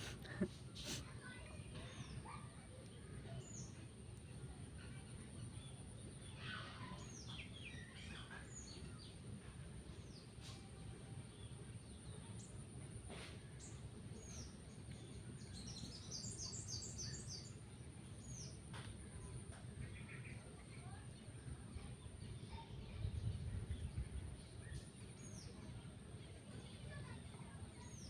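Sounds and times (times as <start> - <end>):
small birds chirping faintly: 0.0 - 28.0.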